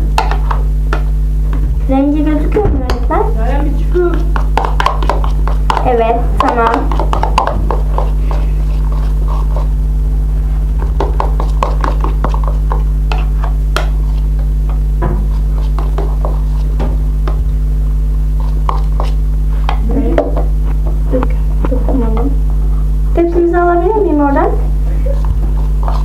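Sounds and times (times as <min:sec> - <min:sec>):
steady electrical hum: 0:00.0 - 0:26.0
slime squelching: 0:02.6 - 0:16.9, 0:18.4 - 0:20.0.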